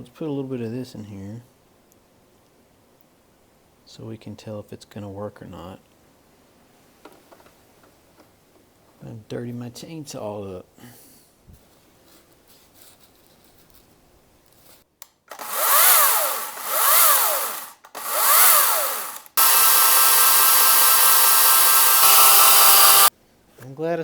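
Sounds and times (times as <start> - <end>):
electric chainsaw running: 15.3 - 23.1.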